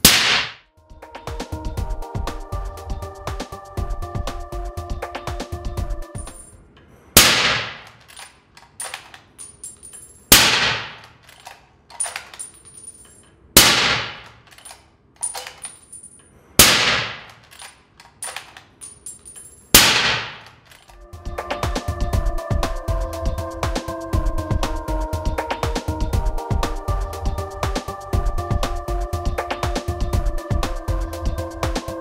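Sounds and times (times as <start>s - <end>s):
suppressed rifle shots: 0.0s - 0.6s, 7.2s - 8.2s, 10.3s - 11.1s, 13.6s - 14.4s, 16.6s - 17.6s, 19.8s - 20.5s.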